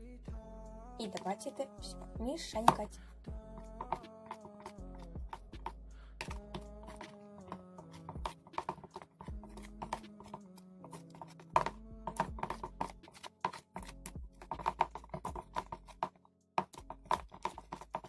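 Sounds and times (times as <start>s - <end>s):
background music with held notes: 0.0s - 16.0s
stirrer tapping against plate: 3.6s - 18.0s.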